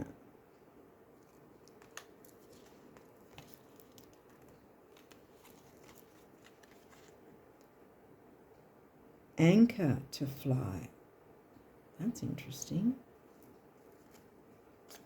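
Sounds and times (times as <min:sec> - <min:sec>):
cards being handled: 0:01.2 - 0:07.7, 0:13.4 - 0:15.0.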